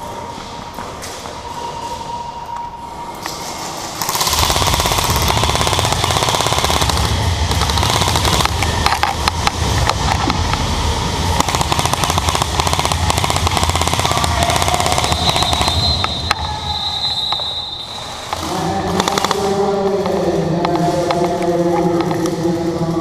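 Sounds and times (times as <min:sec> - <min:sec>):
steady pitched tones: 0:00.0 - 0:23.0
airsoft guns firing full auto: 0:04.0 - 0:09.5, 0:11.4 - 0:16.4, 0:18.9 - 0:20.2.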